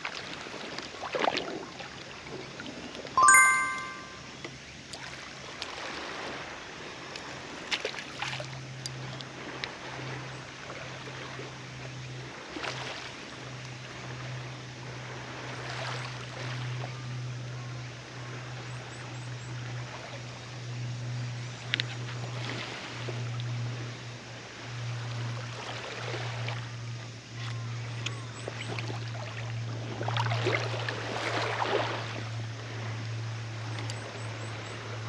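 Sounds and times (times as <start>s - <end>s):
bright chime: 3.2s - 4.2s
water-like noise: 24.4s - 35.0s.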